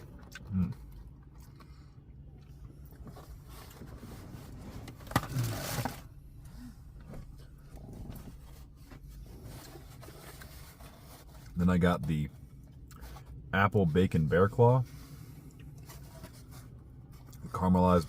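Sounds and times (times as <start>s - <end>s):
packaging rustling and scraping: 3.0s - 6.2s.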